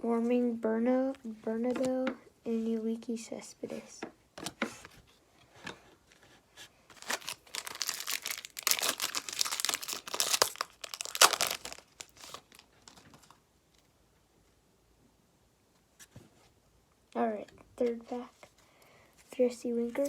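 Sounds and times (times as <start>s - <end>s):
foil wrapper crinkling and tearing: 6.9s - 13.4s.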